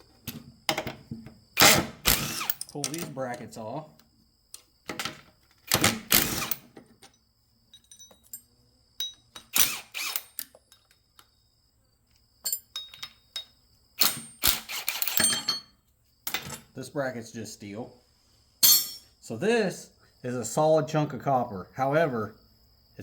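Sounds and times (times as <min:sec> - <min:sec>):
metal tools clicking and clanking: 0:02.5 - 0:03.5, 0:07.0 - 0:09.5, 0:12.4 - 0:15.7, 0:18.6 - 0:19.1.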